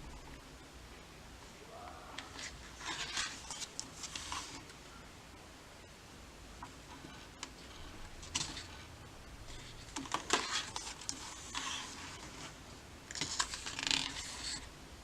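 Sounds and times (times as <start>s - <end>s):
paper pages rustling: 2.2s - 4.8s, 6.9s - 14.7s.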